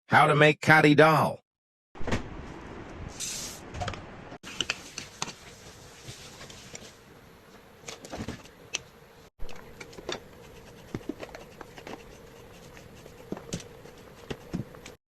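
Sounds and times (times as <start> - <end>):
faint steady hum: 4.0 - 15.0.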